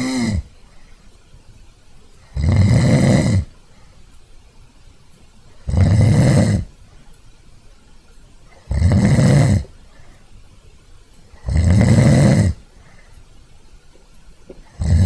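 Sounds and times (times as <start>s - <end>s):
person snoring: 0.0s - 0.5s, 2.3s - 3.5s, 5.6s - 6.7s, 8.6s - 9.7s, 11.4s - 12.6s, 14.7s - 15.0s.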